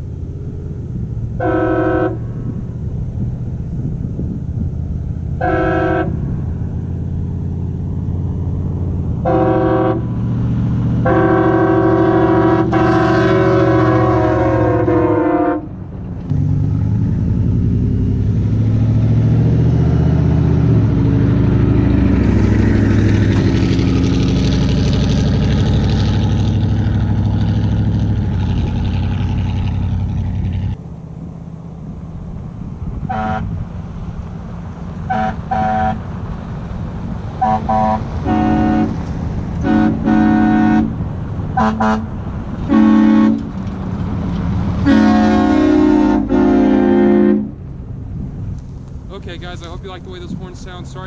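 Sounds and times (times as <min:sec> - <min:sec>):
truck engine idling and revving: 0:00.0 - 0:51.0
train horns blasting: 0:01.4 - 0:02.7, 0:05.4 - 0:06.5, 0:09.2 - 0:10.3, 0:10.9 - 0:15.9, 0:33.0 - 0:33.6, 0:35.0 - 0:36.0, 0:37.4 - 0:41.0, 0:41.6 - 0:43.6, 0:44.8 - 0:47.6.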